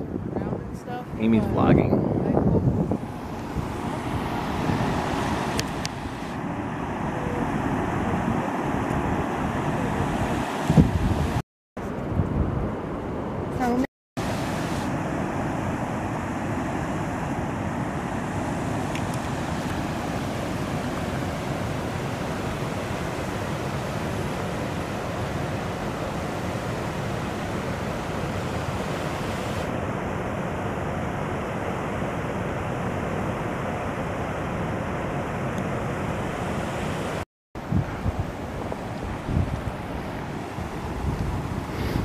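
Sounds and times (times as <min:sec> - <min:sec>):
waterfall roaring: 0:03.0 - 0:11.4, 0:14.2 - 0:37.2.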